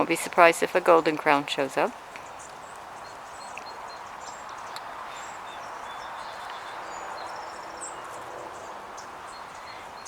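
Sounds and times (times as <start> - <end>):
sparrows chirping: 0.0 - 10.0.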